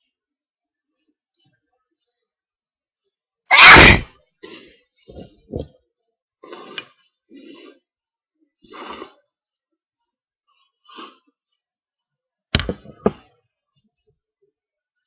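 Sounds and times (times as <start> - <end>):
person sneezing: 3.5 - 4.1.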